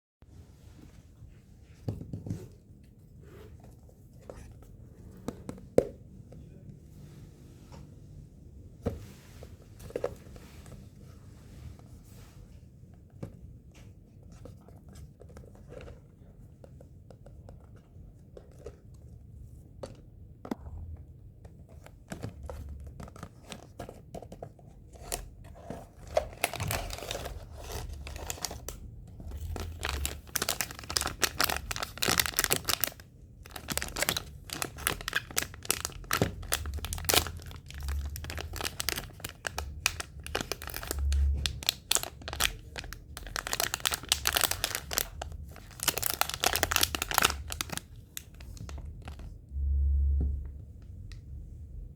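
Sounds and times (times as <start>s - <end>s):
packaging crinkling and tearing: 26.0s - 49.3s.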